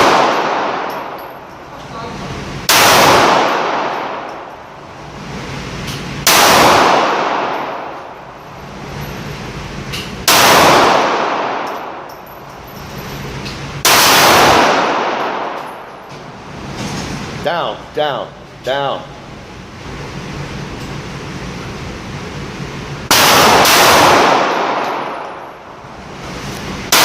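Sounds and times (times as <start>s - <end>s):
pistol shots with echo: 0.0s - 1.2s, 2.7s - 4.5s, 6.2s - 8.2s, 10.2s - 12.1s, 13.8s - 15.9s, 23.1s - 25.6s.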